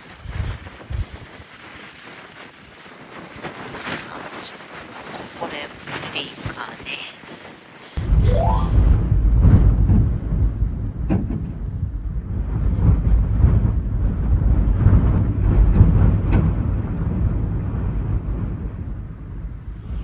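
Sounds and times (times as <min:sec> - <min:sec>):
strong wind on microphone: 0:00.0 - 0:02.4, 0:08.0 - 0:20.0.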